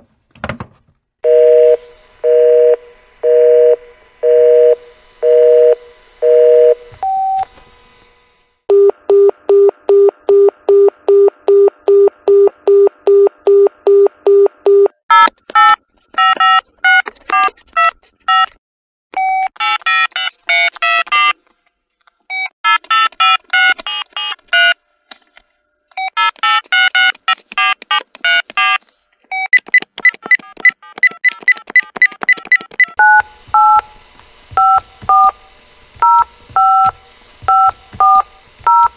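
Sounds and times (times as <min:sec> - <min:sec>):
melodic cellphone ringtones: 0:01.2 - 0:07.5
electronic phone ringer beeps: 0:26.0 - 0:33.9, 0:34.5 - 0:35.4, 0:36.0 - 0:38.9
short keypad beeps: 0:26.1 - 0:33.8.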